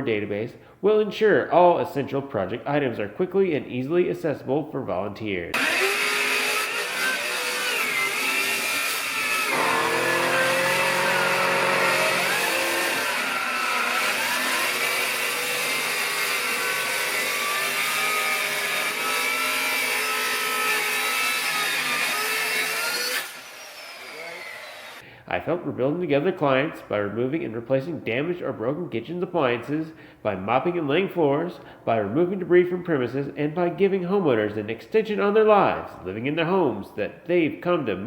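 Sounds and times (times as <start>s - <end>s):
engine running loudly: 9.5s - 12.2s.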